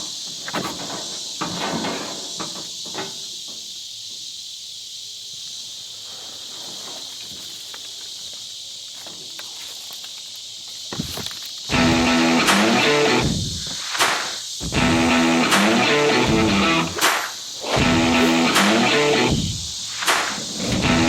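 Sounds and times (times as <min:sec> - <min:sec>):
insects droning: 0:00.0 - 0:21.0
light knocks or footsteps: 0:06.6 - 0:11.8.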